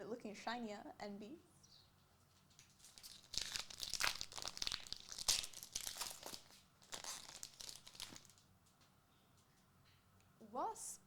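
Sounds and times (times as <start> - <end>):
foil wrapper crinkling and tearing: 2.6 - 8.4.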